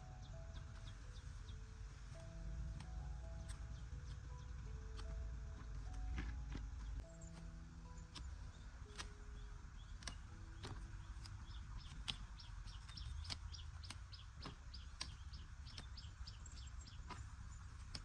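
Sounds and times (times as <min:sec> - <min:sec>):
low rumble: 0:00.0 - 0:12.4
bird chirping: 0:00.0 - 0:18.0
sharp clicks: 0:02.2 - 0:18.0.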